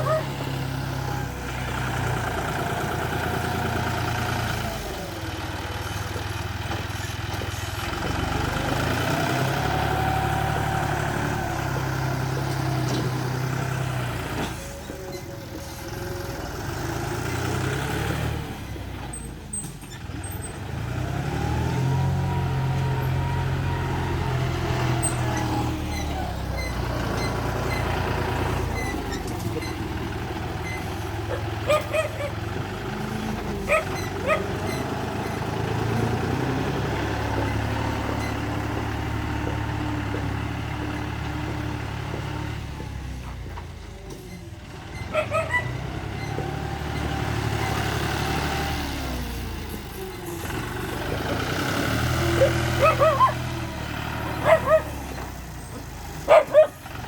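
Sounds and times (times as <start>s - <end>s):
bulldozer engine running: 0.0s - 57.0s
short high-pitched squeaks: 14.4s - 16.1s, 24.9s - 30.0s, 33.7s - 35.4s, 37.3s - 38.7s.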